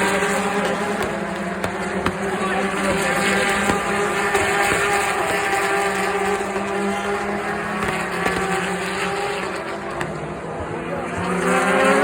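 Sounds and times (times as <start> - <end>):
race cars passing: 0.0 - 12.0.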